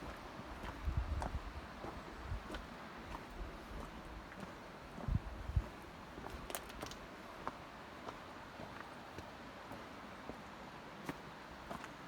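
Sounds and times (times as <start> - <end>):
footsteps on a trail: 0.0 - 12.0.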